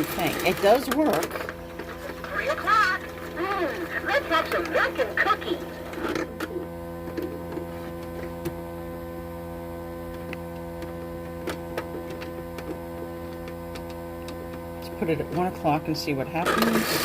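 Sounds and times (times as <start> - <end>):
electrical hum: 0.0 - 17.0.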